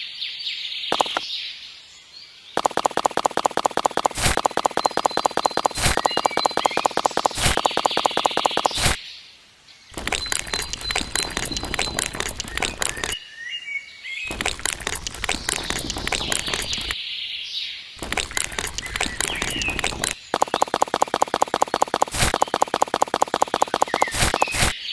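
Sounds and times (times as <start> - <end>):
birds chirping: 0.8 - 1.5, 2.5 - 9.2, 9.9 - 13.3, 14.1 - 17.0, 18.0 - 24.9
rapid clicking and scraping: 0.9 - 1.2, 2.6 - 9.0, 10.0 - 13.2, 14.3 - 17.0, 18.0 - 24.8.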